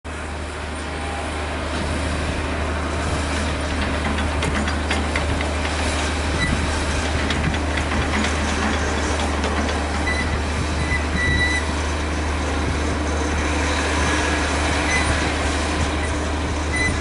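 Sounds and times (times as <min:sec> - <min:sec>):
bulldozer engine drone: 0:00.1 - 0:17.0
metallic clanking of tracks: 0:03.4 - 0:14.2
steel tracks squeaking: 0:03.5 - 0:12.2.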